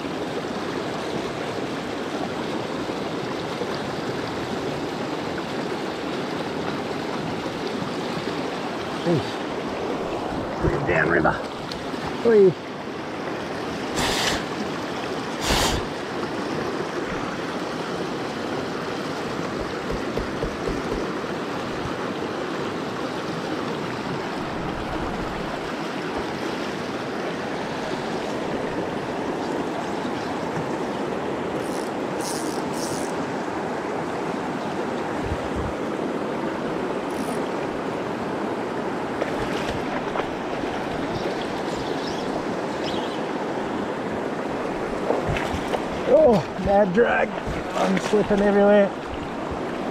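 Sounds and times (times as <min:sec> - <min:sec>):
river rushing over rocks: 0:00.0 - 0:49.9.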